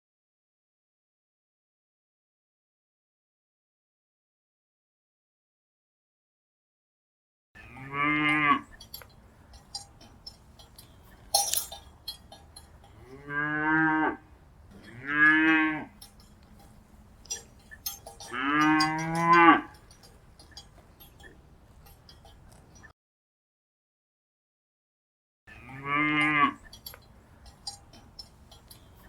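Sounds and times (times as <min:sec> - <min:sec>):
cattle mooing: 0:07.6 - 0:09.0, 0:12.1 - 0:16.3, 0:17.3 - 0:20.0, 0:25.5 - 0:26.9
light clinks: 0:08.3 - 0:13.3, 0:14.6 - 0:22.9, 0:26.2 - 0:29.0.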